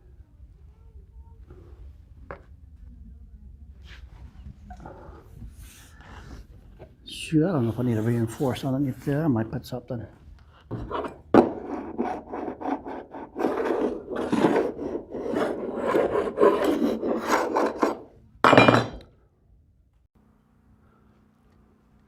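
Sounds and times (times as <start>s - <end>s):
scraping on wood: 10.6s - 18.1s.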